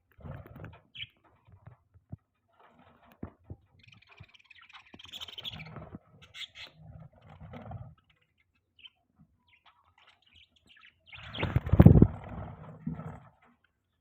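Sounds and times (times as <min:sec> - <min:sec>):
budgerigars chattering and chirping: 0:03.8 - 0:06.8, 0:08.8 - 0:12.1.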